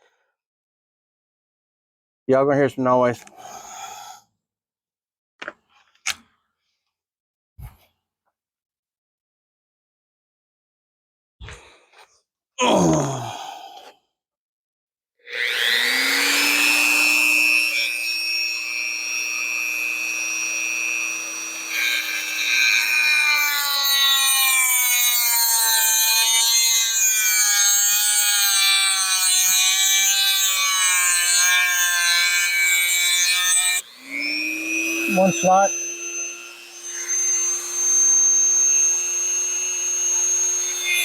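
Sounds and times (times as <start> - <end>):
electric motor whining: 15.4 - 23.2, 27.5 - 41.0.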